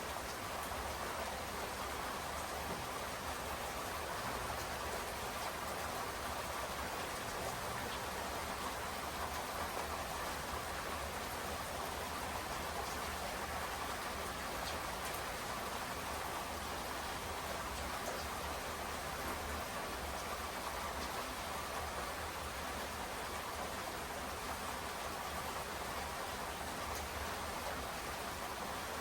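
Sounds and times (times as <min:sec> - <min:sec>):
steady rain hiss: 0:00.0 - 0:29.0
faint raindrop ticks: 0:04.2 - 0:05.8, 0:12.4 - 0:15.6, 0:17.5 - 0:18.5, 0:19.4 - 0:21.2, 0:26.8 - 0:27.5.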